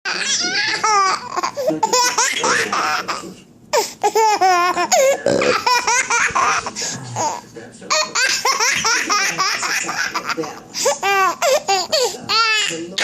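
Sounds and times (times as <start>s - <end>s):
baby laughing: 0.1s - 12.8s.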